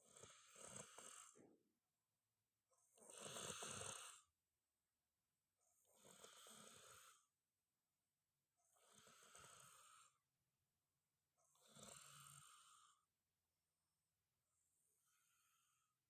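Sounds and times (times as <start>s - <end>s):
person snoring: 0.0s - 1.5s, 3.0s - 4.3s, 5.8s - 7.3s, 8.7s - 10.2s, 11.5s - 13.1s, 14.8s - 16.0s.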